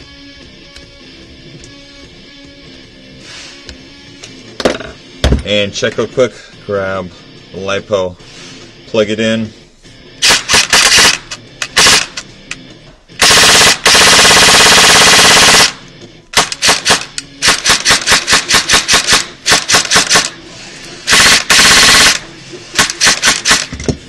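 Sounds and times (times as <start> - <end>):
airsoft rifle firing: 10.2 - 12.3, 13.2 - 20.4, 21.1 - 23.8.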